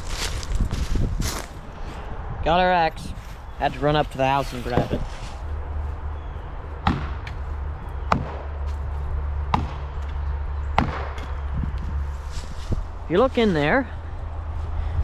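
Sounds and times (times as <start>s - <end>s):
axe striking wood: 10.8s - 11.3s.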